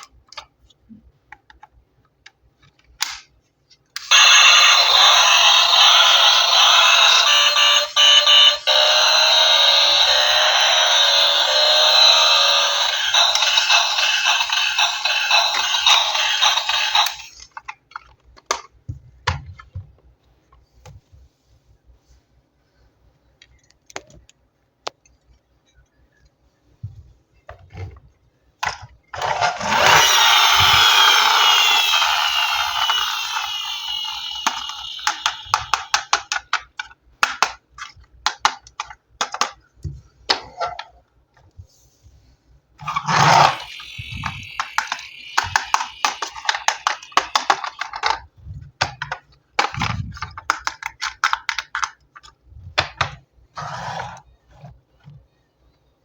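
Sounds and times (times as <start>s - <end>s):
fast run of small clicks: 29.6s - 36.1s, 43.4s - 48.0s.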